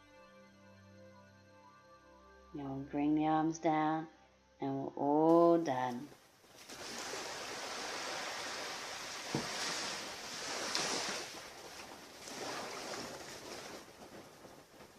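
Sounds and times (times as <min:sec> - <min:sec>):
surf washing onto beach: 0:06.6 - 0:14.9.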